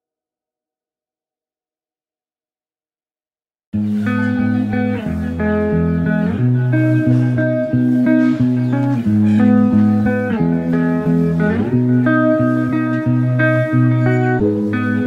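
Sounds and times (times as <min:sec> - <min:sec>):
guitar chords with bass line: 0:03.8 - 0:15.0.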